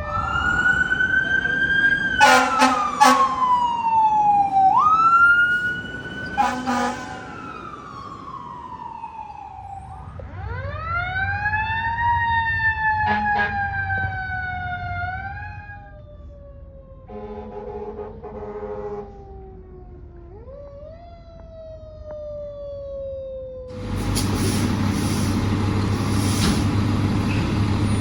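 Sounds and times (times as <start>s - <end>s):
fire truck siren wailing: 0.0s - 28.0s
air horn blast: 2.2s - 3.4s, 6.4s - 7.2s, 13.1s - 13.6s, 17.1s - 19.2s.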